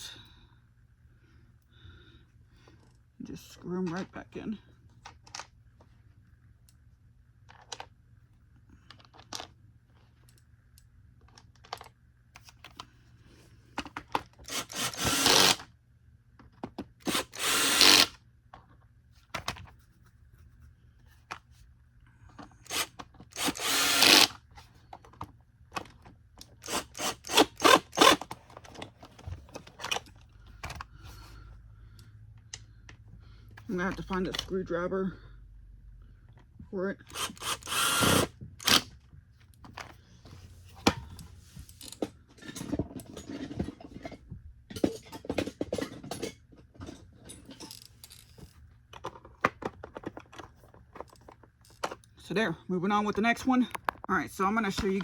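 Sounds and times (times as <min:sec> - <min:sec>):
plastic parts clicking and rattling: 0:08.8 - 0:12.9, 0:22.3 - 0:31.3, 0:37.1 - 0:52.2
screwdriver bursts: 0:14.4 - 0:15.6, 0:17.0 - 0:18.2, 0:22.6 - 0:24.4, 0:26.6 - 0:28.4, 0:37.1 - 0:39.0.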